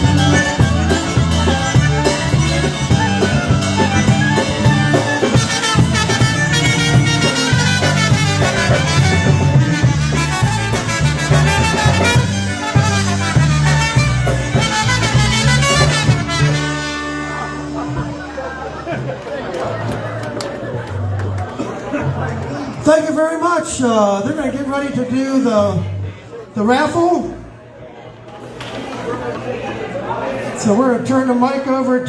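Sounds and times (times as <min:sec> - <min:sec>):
polka band playing: 0:00.0 - 0:22.9.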